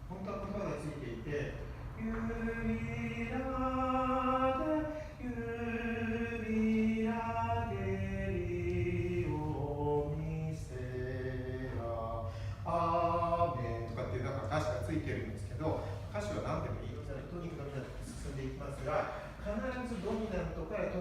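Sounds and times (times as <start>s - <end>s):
group singing unaccompanied: 2.0s - 14.2s.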